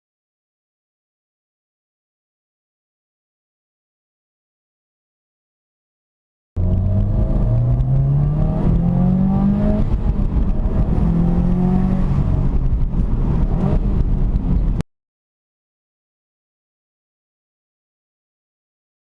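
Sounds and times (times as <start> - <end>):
turbocharged engine accelerating: 6.6 - 14.8.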